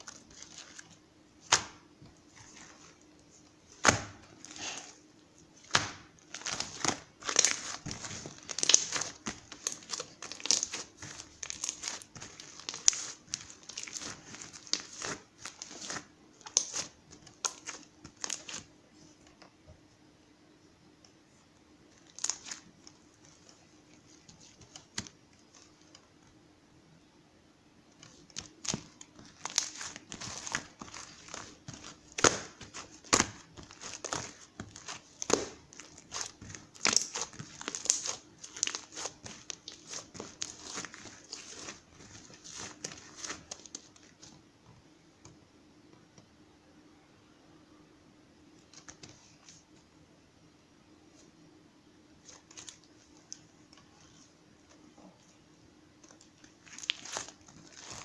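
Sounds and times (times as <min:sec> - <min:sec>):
crinkling and rustling: 0:00.0 - 0:05.0, 0:05.6 - 0:19.5, 0:21.9 - 0:26.3, 0:28.0 - 0:44.4, 0:52.2 - 0:55.4, 0:56.0 - 0:58.0.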